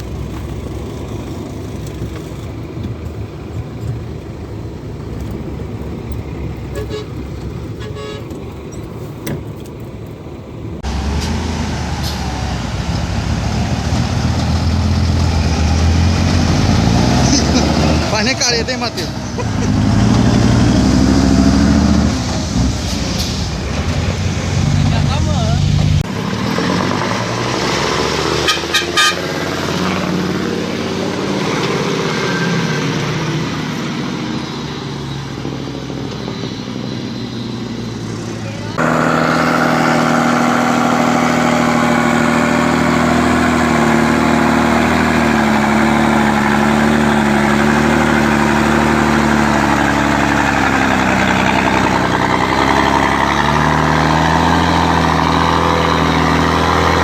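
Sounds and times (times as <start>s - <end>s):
road noise: 0.0s - 57.0s
truck engine rumbling: 0.0s - 57.0s
short horn toots: 6.7s - 7.2s, 7.8s - 8.3s, 28.4s - 29.3s.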